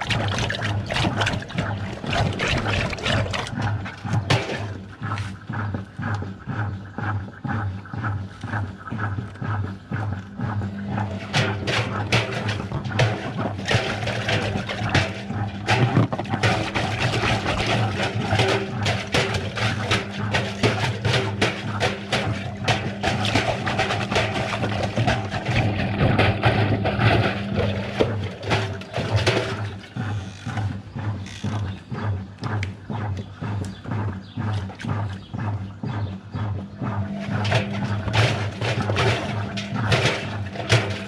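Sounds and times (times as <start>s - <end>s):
washing machine motor hum: 0.0s - 41.0s
water sloshing: 0.0s - 41.0s
balloons knocking and rattling: 11.2s - 30.7s.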